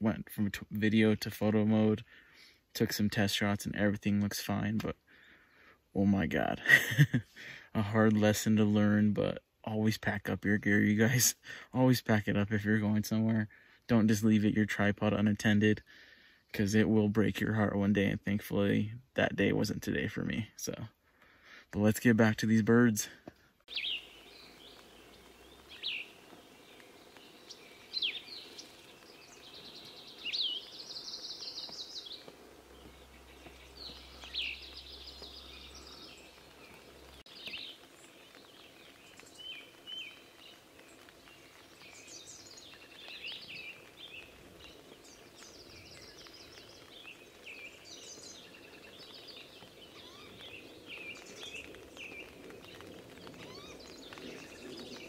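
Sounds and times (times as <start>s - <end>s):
small songbirds chirping: 19.4s - 55.0s.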